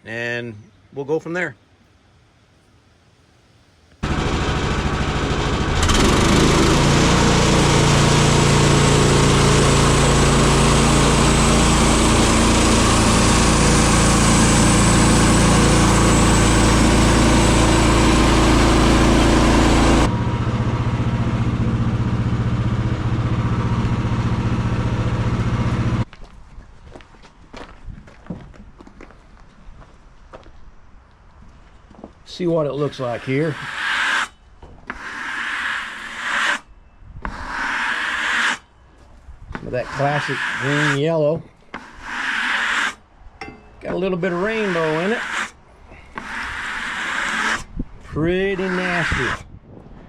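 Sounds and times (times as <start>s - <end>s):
band saw cutting log: 4.0s - 20.2s, 32.6s - 38.7s, 39.6s - 43.0s, 43.8s - 49.4s
sawmill engine running: 4.0s - 26.0s, 32.5s - 34.3s, 34.9s - 38.6s, 39.6s - 43.0s, 43.8s - 49.4s.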